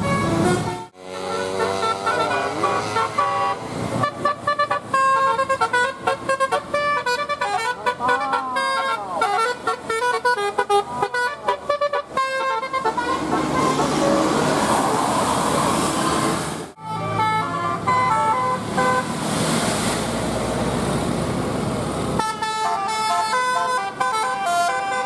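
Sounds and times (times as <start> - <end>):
multi-tone bus horn tune: 0.0 - 14.6, 16.8 - 19.2, 22.2 - 25.0.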